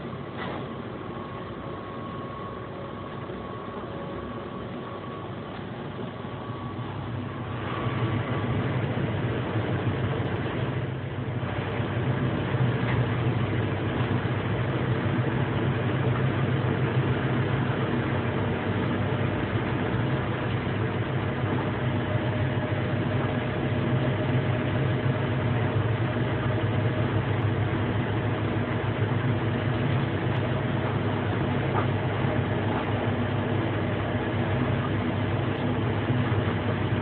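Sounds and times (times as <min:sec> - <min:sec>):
faint steady tone: 0:00.0 - 0:08.7
train running rumble: 0:00.0 - 0:37.0.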